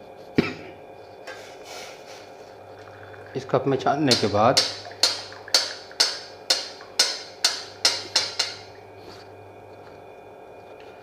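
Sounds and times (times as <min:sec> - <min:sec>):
faint steady hum: 0:00.0 - 0:11.0
tea strainer tapping cup rim: 0:04.1 - 0:08.7.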